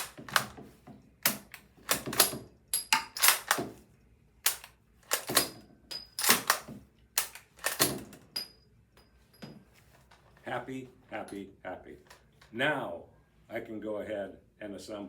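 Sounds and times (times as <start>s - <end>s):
rifle bolt clicks and clacks: 0.0s - 0.6s, 1.2s - 3.8s, 4.4s - 5.6s, 6.2s - 8.2s.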